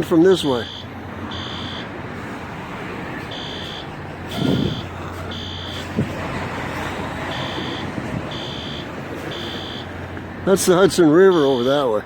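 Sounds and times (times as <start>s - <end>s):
steady street hum: 0.0s - 12.0s
fire alarm horn beeping: 0.5s - 1.9s, 3.3s - 5.9s, 7.3s - 9.9s, 11.3s - 11.8s.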